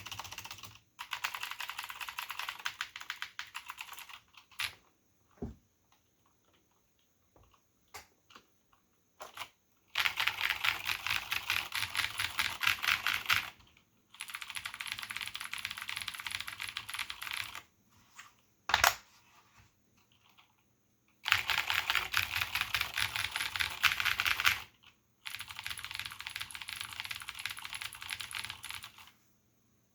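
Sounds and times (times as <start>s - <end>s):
mechanical keyboard typing: 0.0s - 4.9s, 9.2s - 17.7s, 21.2s - 29.2s.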